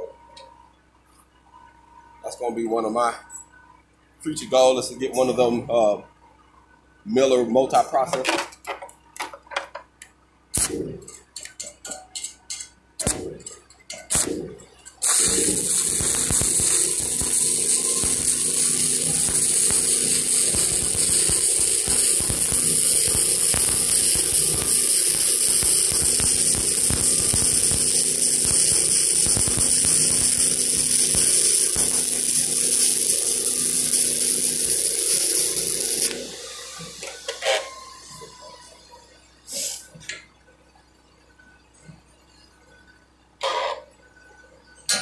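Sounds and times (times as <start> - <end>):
arc welding crackling hiss: 10.6 - 11.3, 13.0 - 38.0, 39.5 - 39.9.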